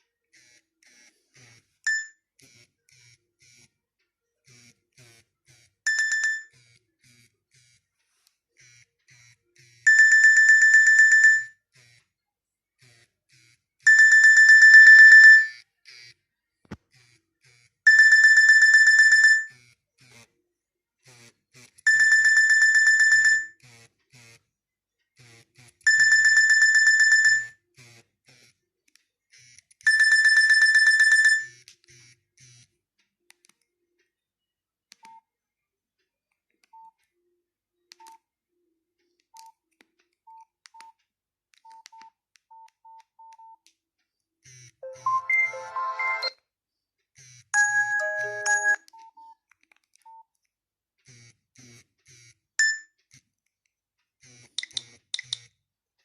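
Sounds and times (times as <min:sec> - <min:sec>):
melodic phone ringtone: 0:01.9 - 0:02.1, 0:05.9 - 0:06.5, 0:09.9 - 0:11.6, 0:13.9 - 0:15.6, 0:17.9 - 0:19.6, 0:21.9 - 0:23.6, 0:25.9 - 0:27.6, 0:29.9 - 0:31.5, 0:44.8 - 0:46.4, 0:47.6 - 0:48.9, 0:52.6 - 0:52.8
soft short phone beeps: 0:01.9 - 0:02.2, 0:36.7 - 0:37.0, 0:44.8 - 0:46.4, 0:47.6 - 0:49.4, 0:50.0 - 0:50.3, 0:52.6 - 0:53.0
phone buzzing tone bursts: 0:44.6 - 0:46.3, 0:47.6 - 0:48.8.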